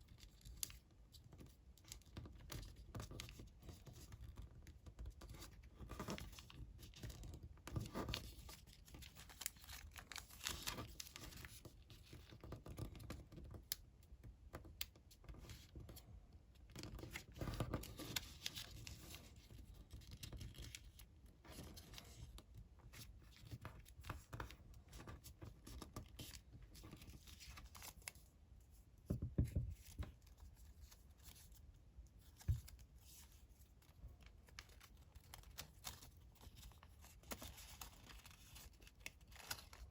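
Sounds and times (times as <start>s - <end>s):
paper rustling and crinkling: 5.1s - 13.5s, 16.7s - 39.9s.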